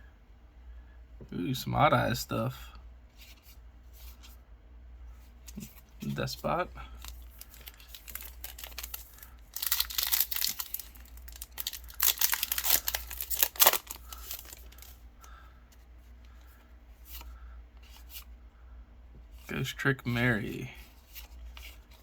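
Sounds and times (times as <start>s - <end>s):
foil wrapper tearing and crinkling: 7.0s - 14.9s
sharp rip of wrapper: 9.6s - 14.7s.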